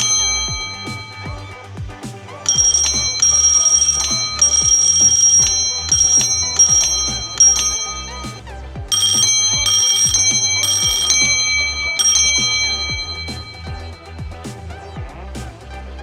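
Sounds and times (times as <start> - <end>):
background music with steady beat: 0.0 - 16.0
electric doorbell ringing: 2.5 - 8.3, 9.0 - 13.8.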